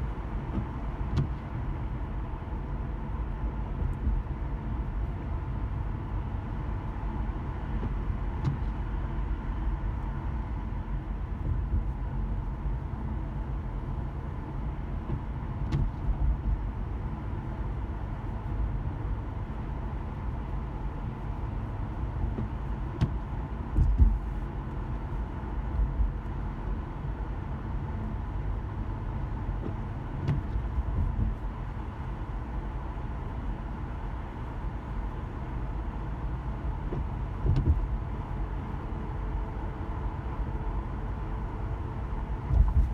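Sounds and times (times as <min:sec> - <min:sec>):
car engine and tyres rumbling: 0:00.0 - 0:42.9
loud thump: 0:42.5 - 0:42.9.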